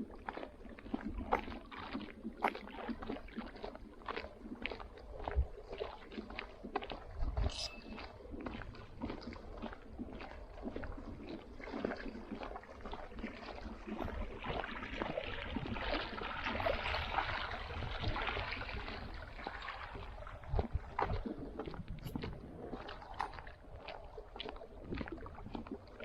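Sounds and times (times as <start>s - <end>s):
lake water lapping and splashing: 0.0s - 26.0s
wind rumble on microphone: 0.0s - 26.0s.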